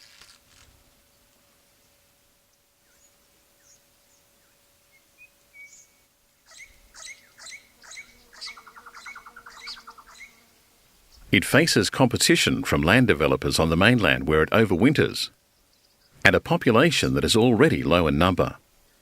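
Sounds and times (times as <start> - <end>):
parrots chirping: 6.5 - 10.4.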